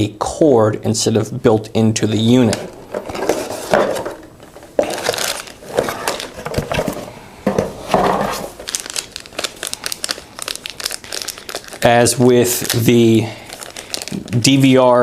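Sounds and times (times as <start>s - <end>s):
plastic crinkling and rustling: 2.4s - 15.0s.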